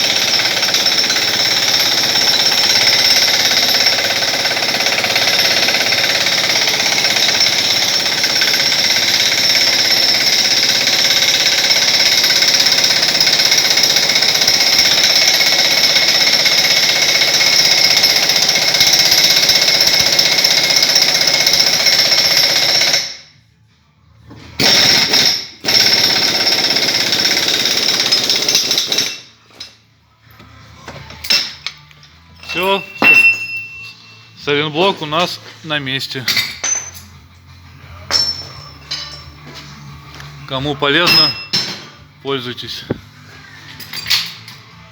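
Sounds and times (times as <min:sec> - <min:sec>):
pneumatic impact wrench hammering: 0:00.0 - 0:23.2, 0:24.6 - 0:29.3.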